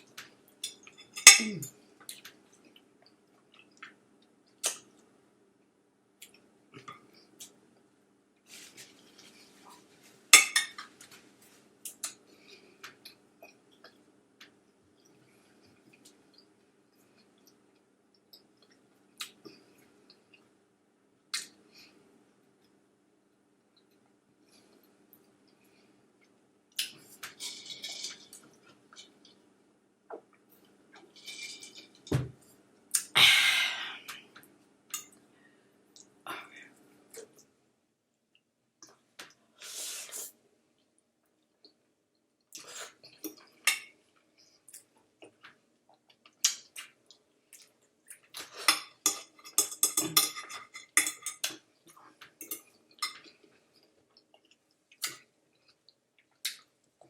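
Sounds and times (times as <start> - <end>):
fork and dishes clinking: 48.6 - 51.6
wet chewing and mouth clicks: 53.2 - 57.0.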